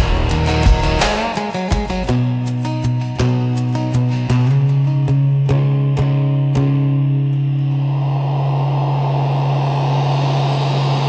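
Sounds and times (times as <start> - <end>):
plucked acoustic guitar: 0.0 - 8.8.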